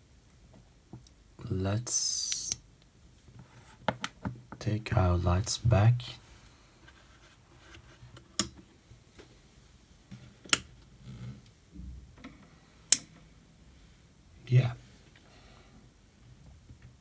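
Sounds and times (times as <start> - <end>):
faint handling and rustling: 3.1 - 4.8, 5.6 - 17.0.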